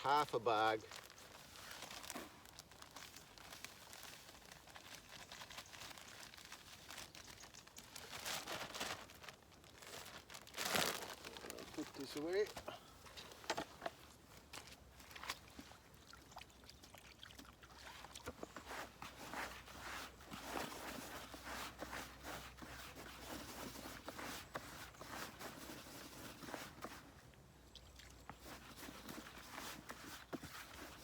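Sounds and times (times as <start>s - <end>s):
bag rustling and scraping: 7.9s - 14.0s.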